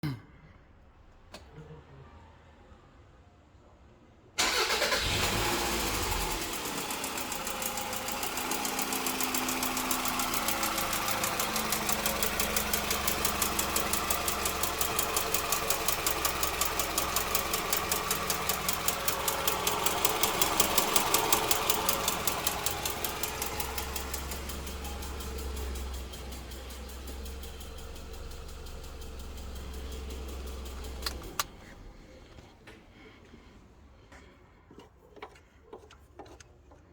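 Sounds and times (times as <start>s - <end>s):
engine running with knock: 6.4s - 31.9s.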